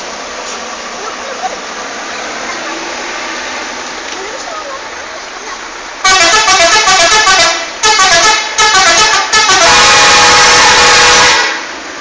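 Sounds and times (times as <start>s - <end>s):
musical multi-tone bus horn: 6.0s - 11.7s.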